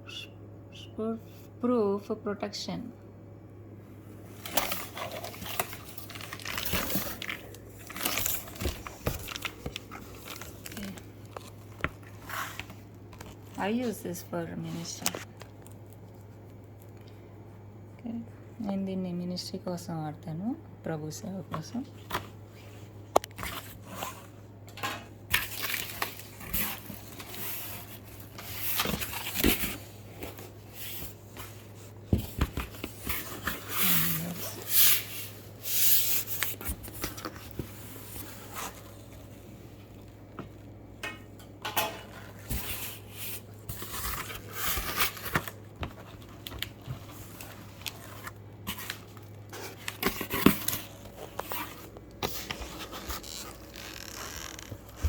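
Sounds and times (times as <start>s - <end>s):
low steady hum: 0.0s - 55.0s
cardboard packaging rustling and tearing: 4.3s - 13.8s, 25.3s - 39.4s, 42.2s - 55.0s.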